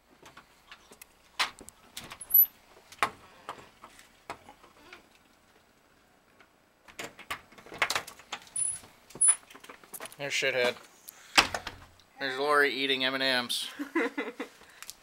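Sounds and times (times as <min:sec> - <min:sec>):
door squeaking open: 0:08.6 - 0:09.4.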